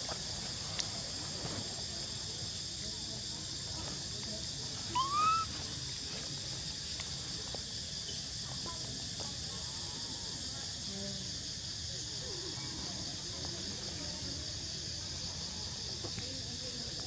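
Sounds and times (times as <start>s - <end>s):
insects droning: 0.0s - 17.0s
baby monkey squealing: 4.9s - 5.5s.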